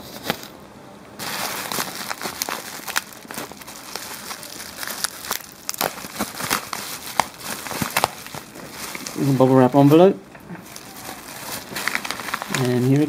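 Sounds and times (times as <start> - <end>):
bubble wrap crinkling: 1.2 - 13.0.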